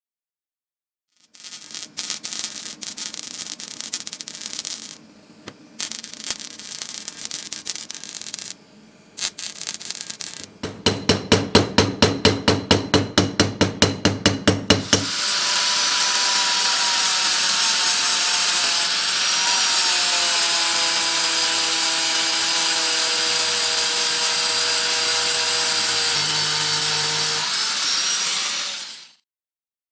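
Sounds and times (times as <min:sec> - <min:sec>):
electric spark crackling: 0:01.1 - 0:10.6, 0:14.8 - 0:29.2.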